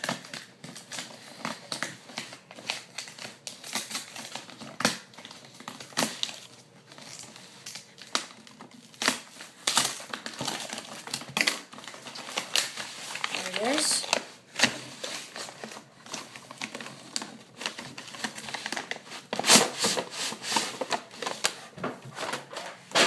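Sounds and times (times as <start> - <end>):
cardboard box crinkling: 0.0 - 22.9
cardboard ripping: 8.0 - 21.5.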